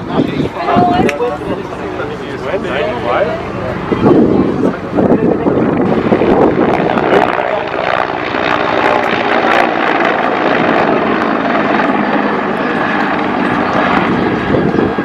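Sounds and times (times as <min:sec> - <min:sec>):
helicopter engine and rotor: 0:00.0 - 0:15.0.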